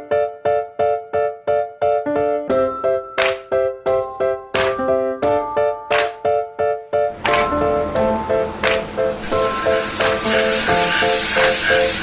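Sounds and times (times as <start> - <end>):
chiming background music: 2.5 - 6.4, 7.2 - 12.0
light percussive hits: 7.2 - 9.1.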